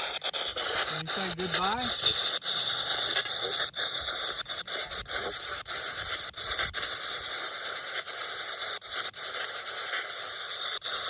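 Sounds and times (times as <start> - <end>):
radio scanner static hissing: 0.0 - 7.5.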